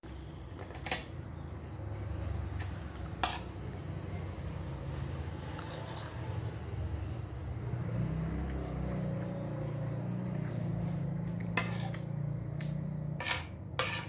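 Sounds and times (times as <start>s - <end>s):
utensils clinking against dishes: 2.6s - 3.9s, 5.5s - 6.3s.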